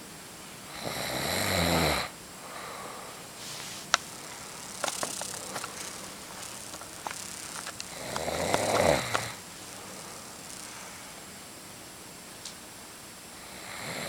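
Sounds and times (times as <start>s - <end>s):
quiet breathing: 0.6s - 11.5s
person snoring: 0.7s - 11.1s, 13.4s - 14.0s
sharp clicks: 3.8s - 10.9s.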